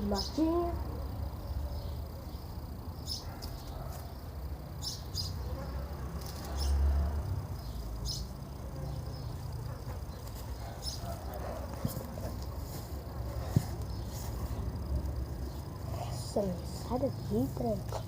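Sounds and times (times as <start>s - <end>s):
small birds chirping: 0.0s - 18.0s
steady low rumble: 7.4s - 18.0s.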